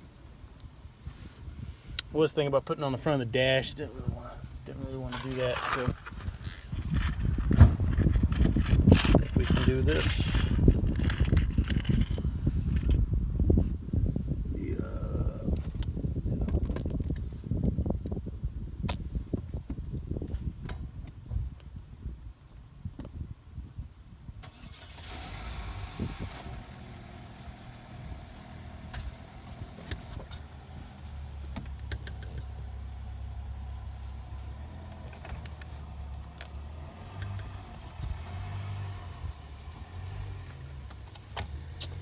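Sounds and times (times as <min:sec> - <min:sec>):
car engine starting and idling: 0:24.4 - 0:42.0
sharp clicks and knocks: 0:31.5 - 0:32.5.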